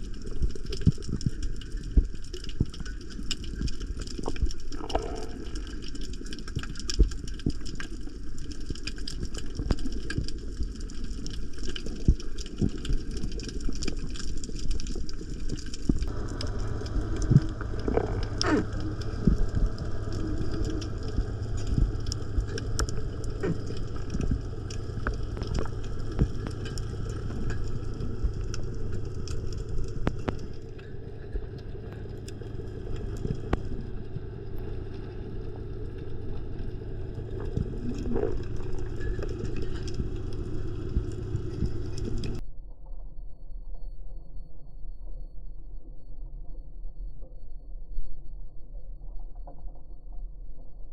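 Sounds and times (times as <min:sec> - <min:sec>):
muffled underwater rumble: 0:00.0 - 0:50.9
sharp underwater clicks: 0:00.1 - 0:33.8
boat motor hum: 0:16.0 - 0:42.4.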